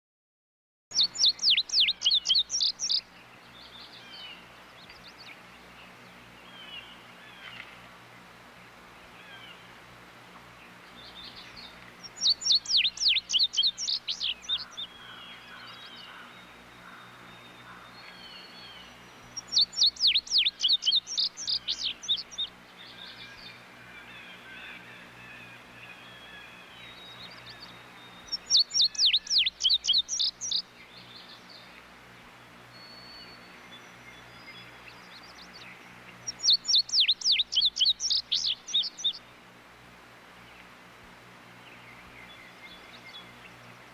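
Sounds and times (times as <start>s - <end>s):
faint bird calls: 0.9s - 7.9s, 8.6s - 9.8s, 10.5s - 39.3s
bird singing high down-slurred notes: 26.8s - 31.6s.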